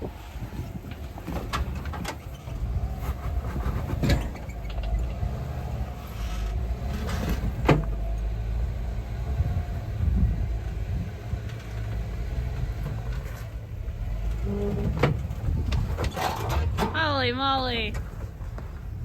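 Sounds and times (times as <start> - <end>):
vehicle engine low rumble: 0.0 - 19.0.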